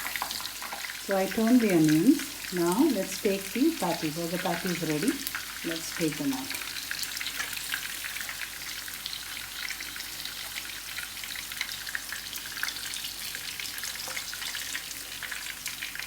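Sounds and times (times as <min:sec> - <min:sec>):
hot oil sizzling and popping: 0:00.0 - 0:16.0.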